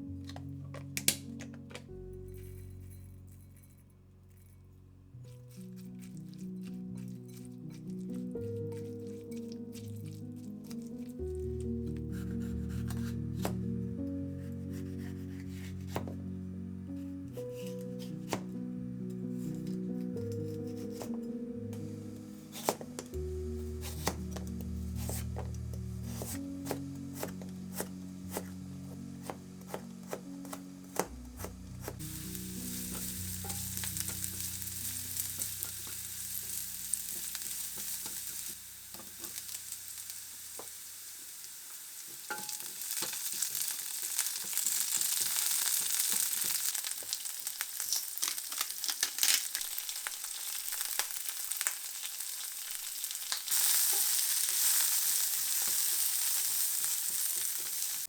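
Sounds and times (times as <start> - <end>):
quiet background music: 0.0 - 47.4
food sizzling in a frying pan: 26.0 - 58.0.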